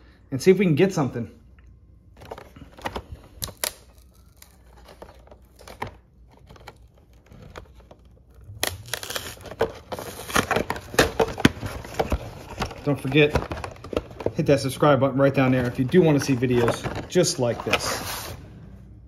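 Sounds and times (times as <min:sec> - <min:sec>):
packaging tearing and crinkling: 0:02.2 - 0:14.4, 0:15.4 - 0:18.3.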